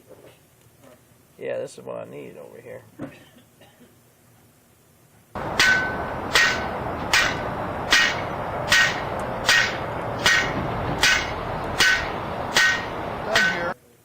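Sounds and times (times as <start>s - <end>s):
steady hiss: 3.9s - 14.0s
metallic clanging strikes: 5.4s - 13.8s.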